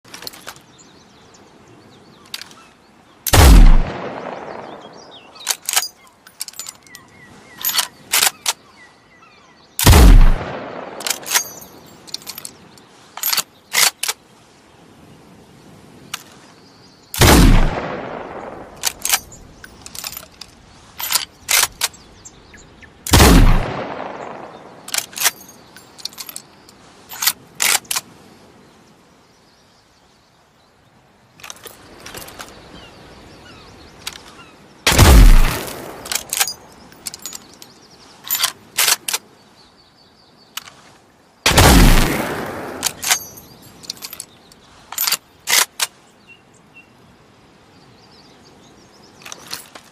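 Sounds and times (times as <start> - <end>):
rifle bolt metallic clicks: 2.2 - 2.6, 5.4 - 8.6, 9.8 - 14.2, 18.8 - 22.0, 23.1 - 26.5, 27.1 - 28.1, 34.0 - 39.2, 41.5 - 46.0
rifle shots echoing: 3.3 - 5.4, 9.8 - 11.6, 17.2 - 19.3, 23.1 - 25.1, 34.9 - 36.5, 41.5 - 43.4.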